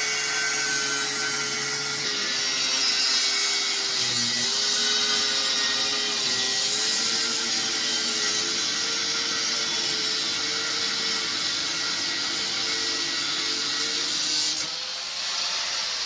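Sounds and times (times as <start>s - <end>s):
power tool grinding steel: 0.0s - 16.0s.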